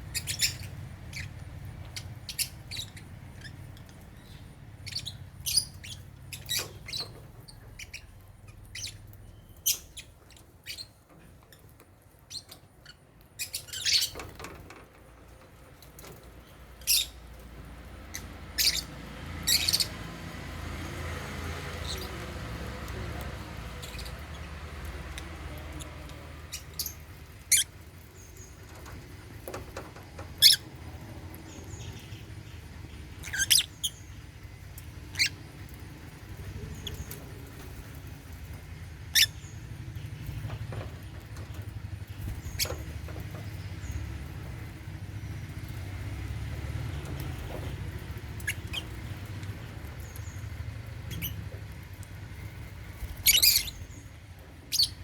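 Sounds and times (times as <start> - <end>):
lovebirds chirping: 0.0 - 14.5, 15.8 - 55.0.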